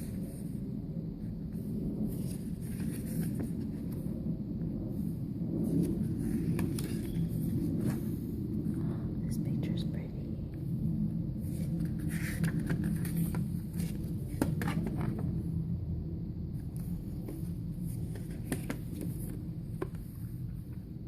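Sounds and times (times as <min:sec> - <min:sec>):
steady low hum: 0:00.0 - 0:21.0
paper rustling: 0:02.1 - 0:03.9, 0:11.4 - 0:15.2.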